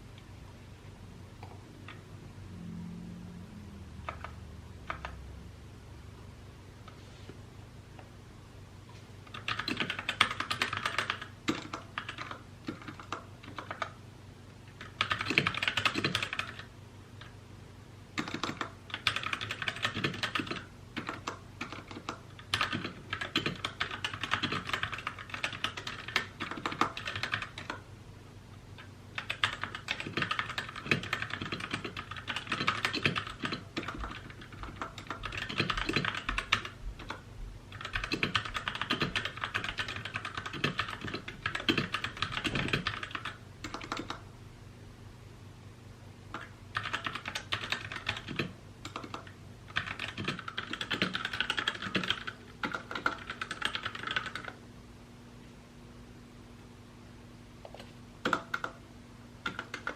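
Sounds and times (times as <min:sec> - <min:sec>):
typing on mechanical keyboard: 0:04.1 - 0:05.2, 0:09.3 - 0:14.0, 0:14.7 - 0:17.3, 0:18.2 - 0:27.8, 0:29.2 - 0:44.2, 0:46.3 - 0:54.6, 0:57.7 - 0:58.8, 0:59.4 - 0:59.9.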